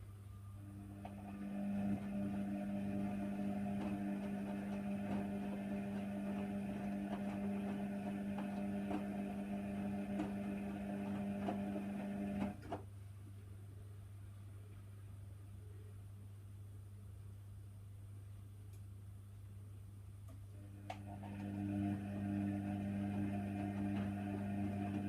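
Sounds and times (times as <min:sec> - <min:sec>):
quiet low hum: 0:00.0 - 0:25.0
washer dryer humming: 0:00.6 - 0:12.8, 0:20.7 - 0:25.0
click: 0:18.7 - 0:18.9.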